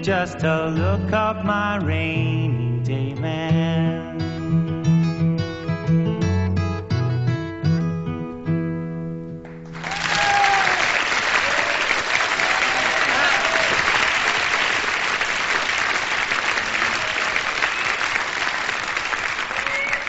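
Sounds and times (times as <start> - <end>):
audience applauding: 9.6 - 20.0
cheers and whistles: 9.8 - 14.9, 16.8 - 18.7, 19.4 - 20.0.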